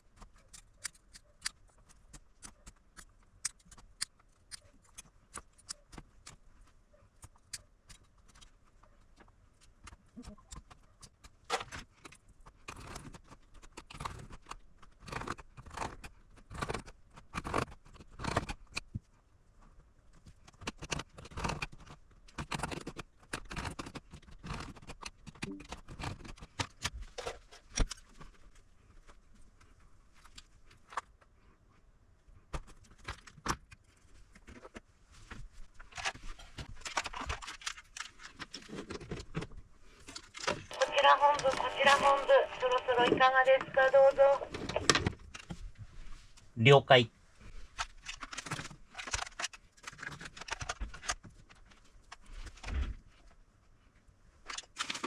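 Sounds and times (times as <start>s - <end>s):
small clicks and snips: 0.0s - 28.4s.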